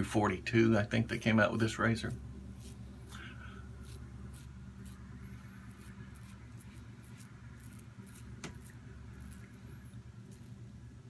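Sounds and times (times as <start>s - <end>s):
steady low hum: 0.0s - 11.0s
razor scraping beard stubble: 2.5s - 10.6s.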